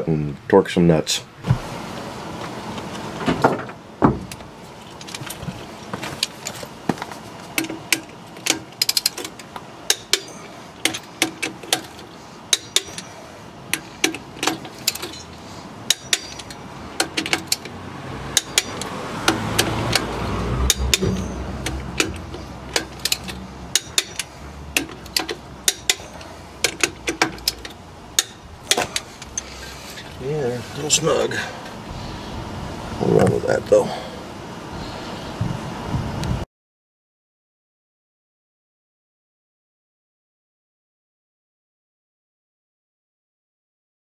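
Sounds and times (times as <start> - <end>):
torque wrench clicking: 7.6 - 13.1, 15.9 - 17.7, 18.3 - 29.5.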